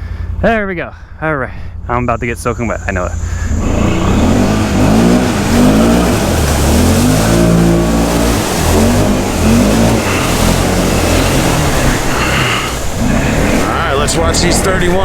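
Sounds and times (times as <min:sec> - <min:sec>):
churned water and mud rushing: 0:02.0 - 0:15.0
engine revving hard: 0:03.2 - 0:15.0.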